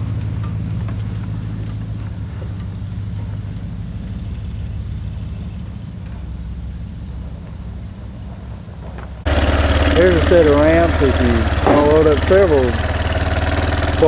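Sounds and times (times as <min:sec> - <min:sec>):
crickets chirping: 0:00.0 - 0:09.3
engine running low: 0:00.0 - 0:14.0
insects buzzing: 0:00.0 - 0:14.0.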